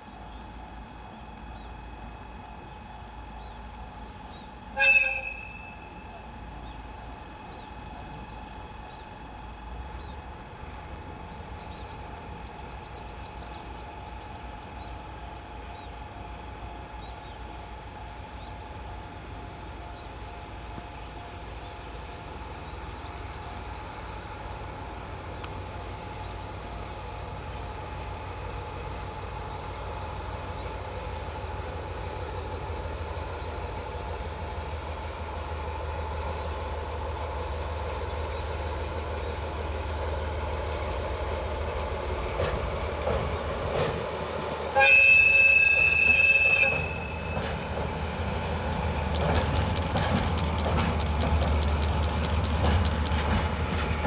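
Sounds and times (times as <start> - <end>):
locomotive engine rumble: 0.0 - 54.0
locomotive whistle blast: 4.8 - 6.2, 44.7 - 47.6.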